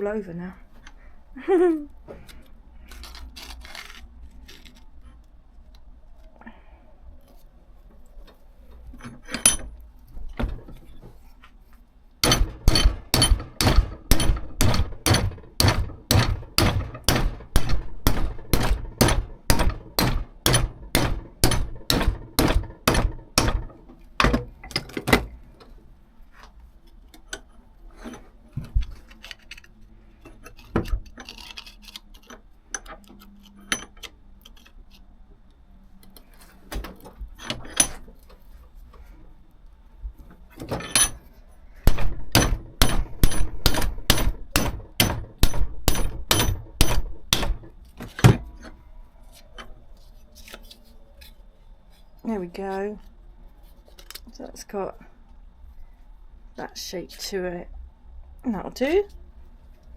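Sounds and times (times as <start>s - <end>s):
tool clatter: 9.0s - 9.7s, 12.2s - 25.3s, 37.0s - 38.2s, 40.6s - 41.3s, 41.9s - 48.4s
hammer striking sheet steel: 12.2s - 23.7s, 41.9s - 47.7s.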